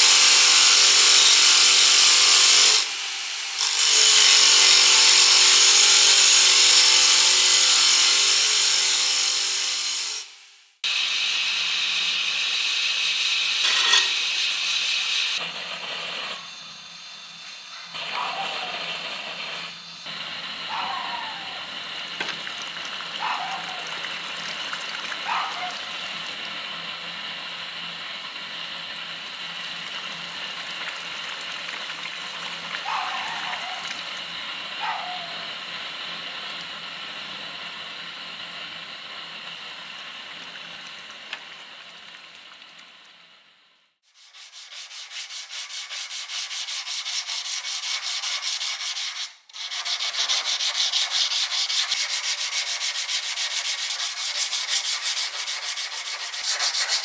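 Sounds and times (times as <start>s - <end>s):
rubbing strokes on blade: 44.1s - 57.0s.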